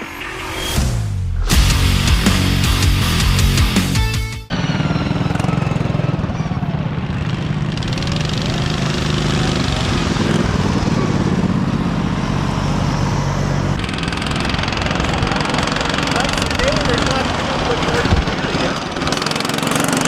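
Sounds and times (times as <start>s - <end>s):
lawnmower engines racing: 4.5s - 20.0s.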